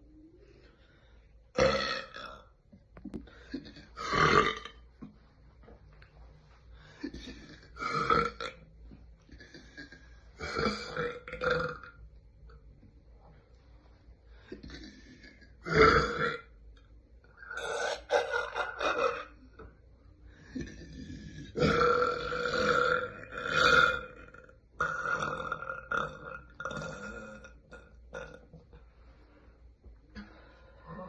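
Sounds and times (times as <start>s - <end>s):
person burping: 1.6s - 2.5s, 3.3s - 4.8s, 7.0s - 8.6s, 9.3s - 12.0s, 14.6s - 16.5s, 17.4s - 19.7s, 20.5s - 28.5s.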